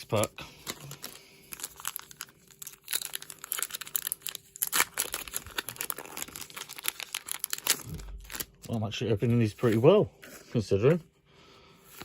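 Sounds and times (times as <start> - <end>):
foil wrapper tearing and crinkling: 0.0 - 8.8.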